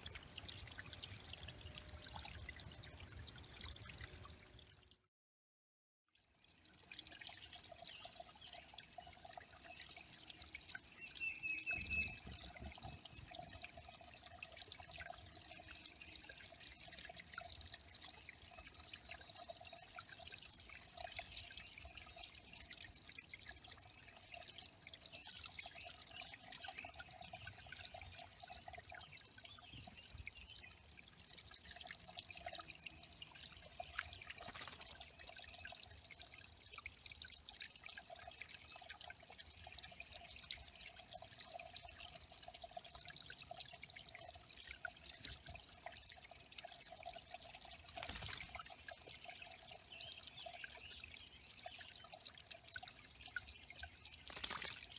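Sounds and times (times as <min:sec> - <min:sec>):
water trickling and dripping: 0:00.0 - 0:05.1, 0:06.1 - 0:54.9
bird chirp: 0:10.9 - 0:13.2.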